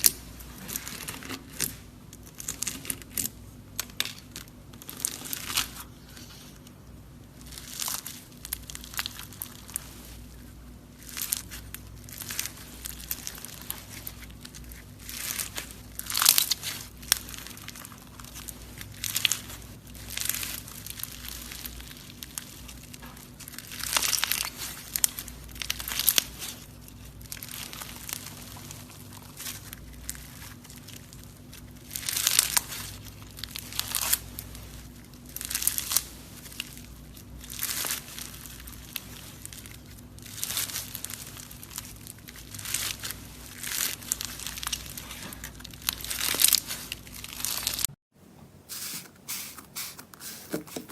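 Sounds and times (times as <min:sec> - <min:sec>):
slime squishing and crackling: 0:00.0 - 0:48.0.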